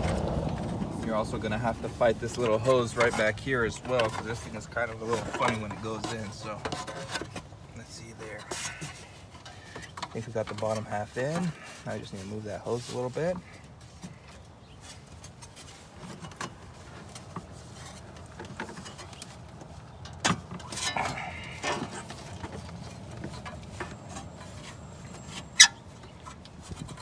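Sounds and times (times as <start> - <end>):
plastic parts knocking and rubbing: 0.0 - 27.0.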